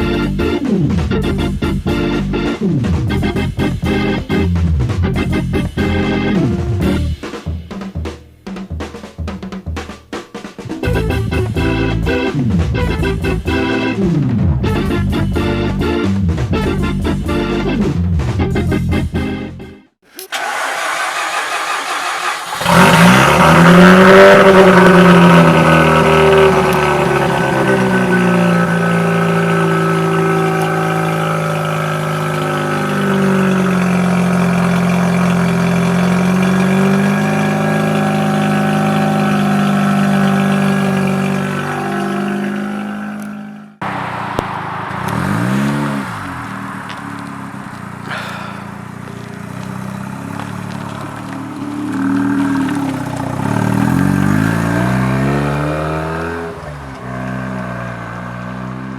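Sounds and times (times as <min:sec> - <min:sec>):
engine revving: 0:20.0 - 0:58.9
rotary engine starting and idling: 0:20.0 - 0:58.9.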